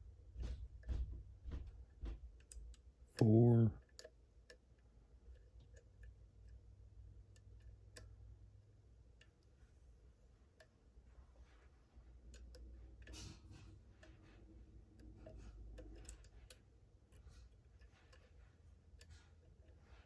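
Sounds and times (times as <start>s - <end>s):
low steady hum: 0.0s - 20.0s
lock pick clicking and scraping: 12.1s - 20.0s.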